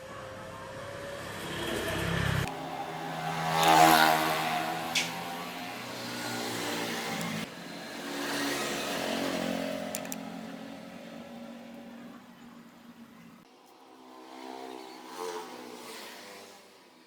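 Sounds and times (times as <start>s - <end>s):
sharp clicks: 9.9s - 10.2s.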